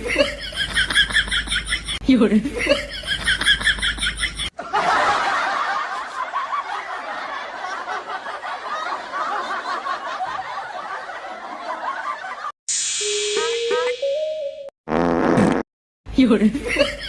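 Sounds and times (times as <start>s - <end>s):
crowd laughing: 0.0s - 12.6s.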